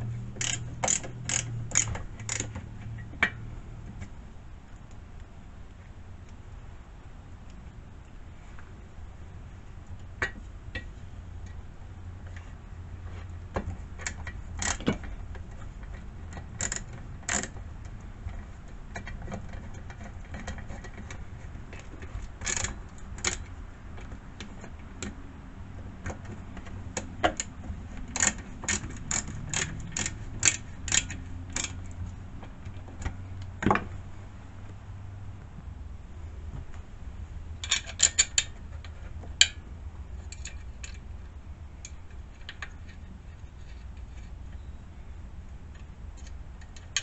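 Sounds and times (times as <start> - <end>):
metal parts clinking: 0.4 - 2.5, 37.6 - 38.5.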